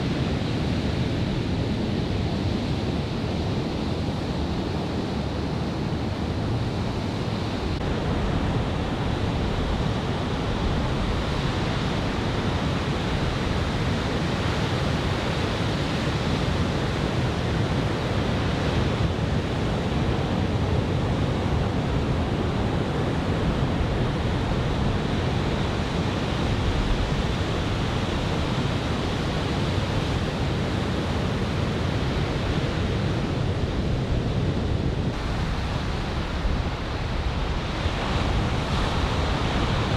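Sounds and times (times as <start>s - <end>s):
wind on microphone: 0.0s - 39.9s.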